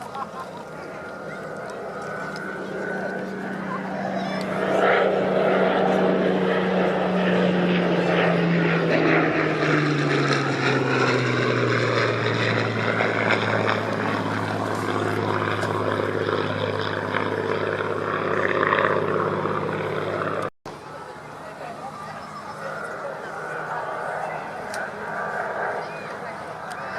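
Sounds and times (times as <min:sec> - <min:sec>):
propeller aircraft flying past: 0:00.0 - 0:26.9.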